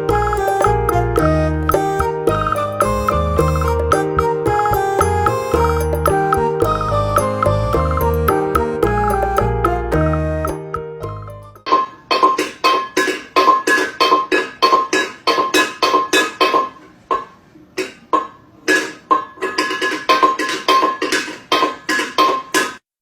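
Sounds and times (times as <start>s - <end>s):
plucked woodblock-like music: 0.0s - 11.7s.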